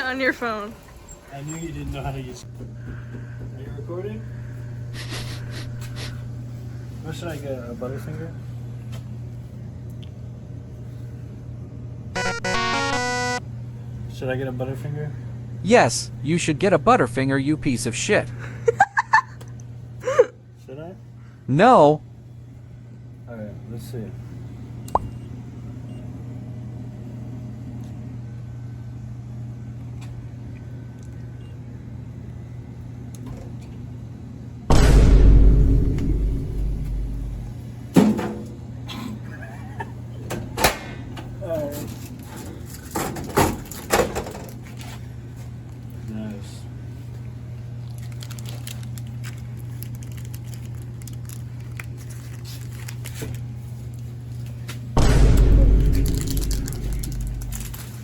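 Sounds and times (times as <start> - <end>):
vending machine humming: 0.0 - 7.2, 10.5 - 23.2, 24.2 - 58.0
wrapper crinkling: 47.8 - 54.1, 55.8 - 58.0.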